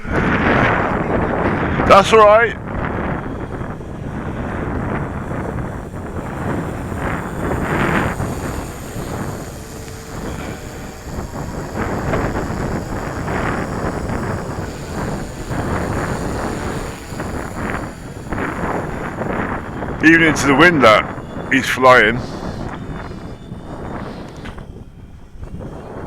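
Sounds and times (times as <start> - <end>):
drone motors whining: 0.0 - 26.0
wind buffeting microphone: 0.0 - 26.0.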